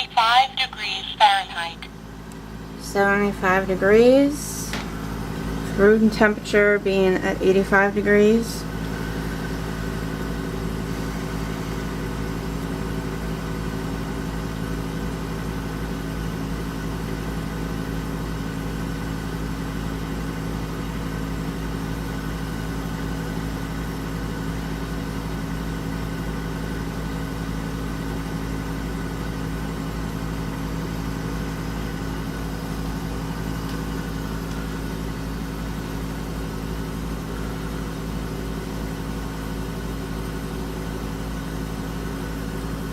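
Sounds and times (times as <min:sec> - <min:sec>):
air conditioner humming: 0:00.0 - 0:18.6, 0:28.8 - 0:42.9.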